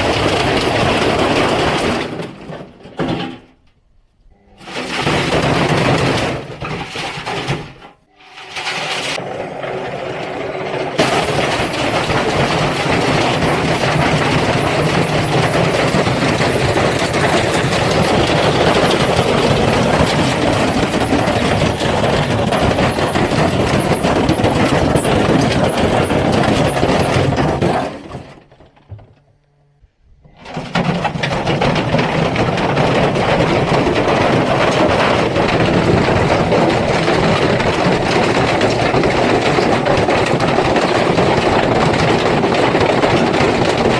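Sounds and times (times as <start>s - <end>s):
brick clattering in washing machine: 0.0s - 3.6s, 4.6s - 29.2s, 30.4s - 43.9s.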